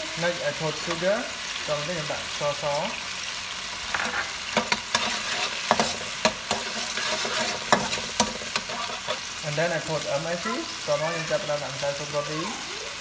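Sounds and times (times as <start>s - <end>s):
food sizzling in hot oil: 0.0s - 13.0s
spatula scraping a pan: 3.8s - 9.5s.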